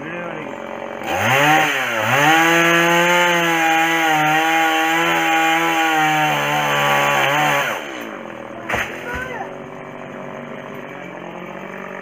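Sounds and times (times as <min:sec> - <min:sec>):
chainsaw cutting wood: 0:00.4 - 0:09.5.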